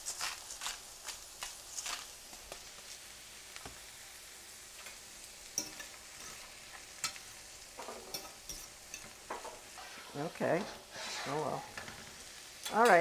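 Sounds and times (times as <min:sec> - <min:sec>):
asparagus sizzling in oil: 0:00.0 - 0:13.0.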